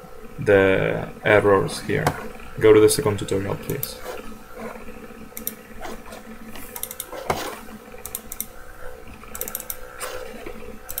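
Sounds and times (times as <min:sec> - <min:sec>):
keyboard keys clicking: 0:06.7 - 0:07.1, 0:08.0 - 0:08.5, 0:09.3 - 0:09.8.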